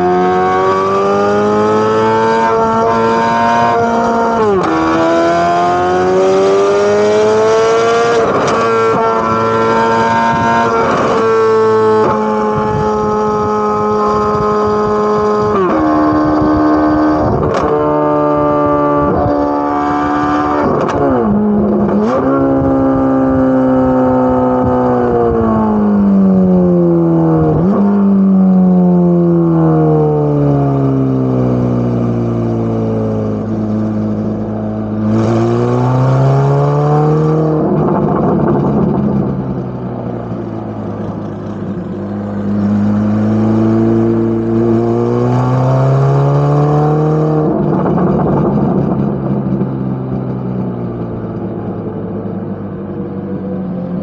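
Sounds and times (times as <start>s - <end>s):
car exhaust revving: 28.7s - 52.8s.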